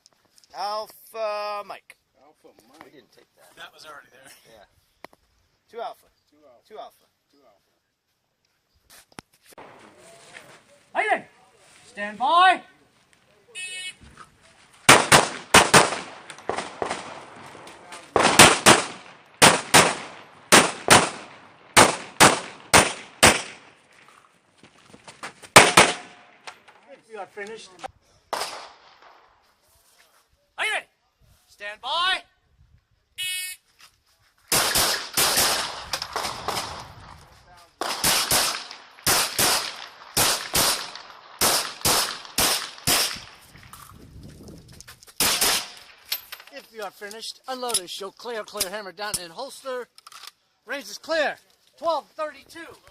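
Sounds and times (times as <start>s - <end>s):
pistol shots: 14.9s - 23.8s, 25.6s - 26.4s, 28.3s - 29.2s, 34.5s - 36.8s, 37.8s - 43.4s, 45.2s - 46.0s.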